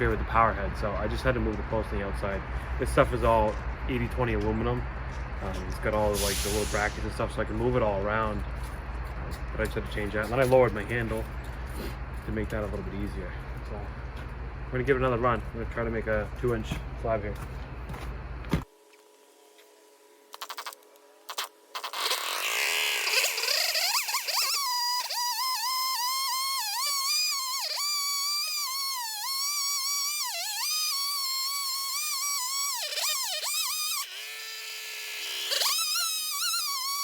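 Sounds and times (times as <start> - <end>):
chainsaw cutting log: 21.3 - 37.0.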